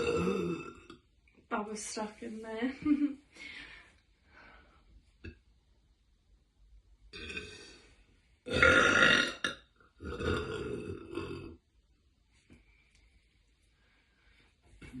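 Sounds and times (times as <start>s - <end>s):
woman burping loudly: 0.0s - 1.0s, 7.1s - 7.8s, 8.4s - 11.6s.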